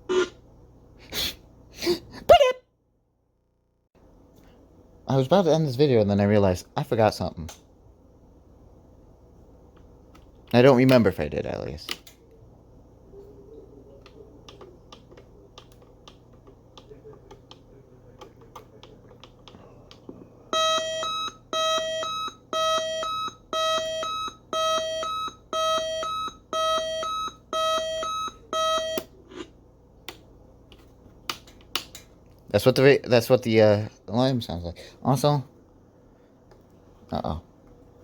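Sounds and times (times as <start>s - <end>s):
alarm clock beeping: 20.5s - 29.1s.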